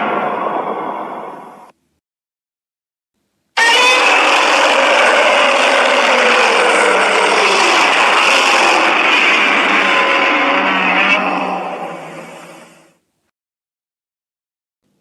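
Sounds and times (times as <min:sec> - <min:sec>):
harsh monster roar: 0:03.6 - 0:13.0.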